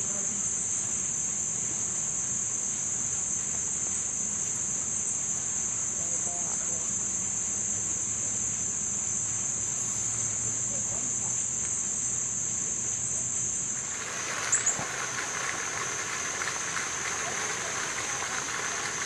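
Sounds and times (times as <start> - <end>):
insect chorus trilling: 0.0 - 19.0
soft rushing noise: 13.8 - 19.0.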